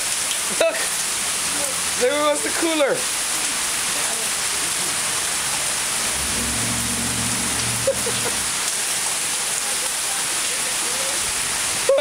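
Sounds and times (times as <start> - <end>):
heavy rain pouring: 0.0 - 12.0
low hum: 6.0 - 8.9.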